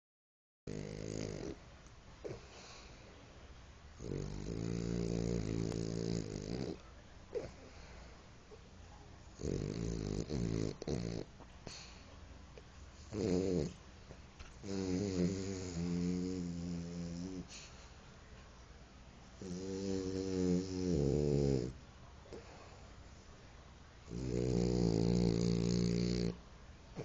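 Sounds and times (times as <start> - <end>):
dog snoring: 0.7 - 1.6, 2.2 - 2.9, 4.0 - 7.9, 9.4 - 11.9, 13.0 - 13.8, 14.6 - 17.7, 19.4 - 22.5, 24.1 - 26.4.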